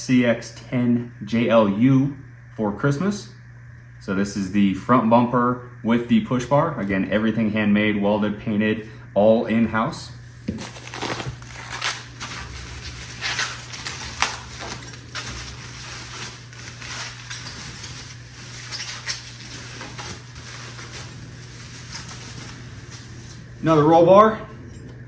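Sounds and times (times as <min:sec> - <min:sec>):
packaging crinkling: 0:10.5 - 0:23.8.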